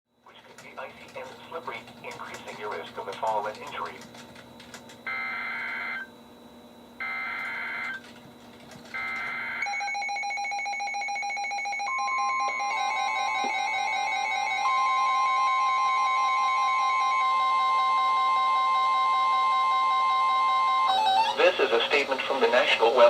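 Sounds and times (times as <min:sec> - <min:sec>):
steady warning tone: 0:00.2 - 0:23.0
alert radio pulsed beeps: 0:09.0 - 0:21.6.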